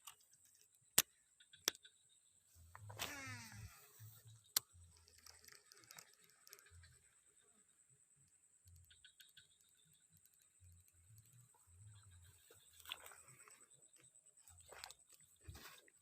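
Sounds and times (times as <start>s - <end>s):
soft ticks: 4.4s - 7.2s, 8.2s - 13.2s.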